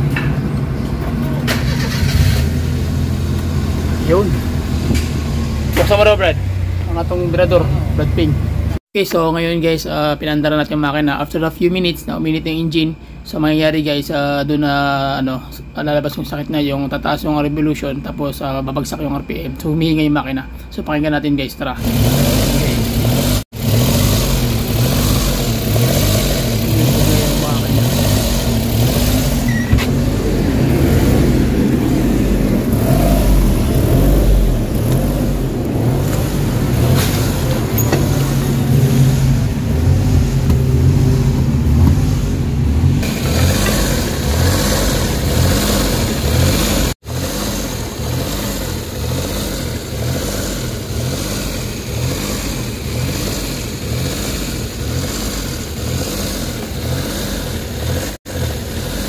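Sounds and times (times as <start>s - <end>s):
car engine rough idle: 21.8s - 59.0s.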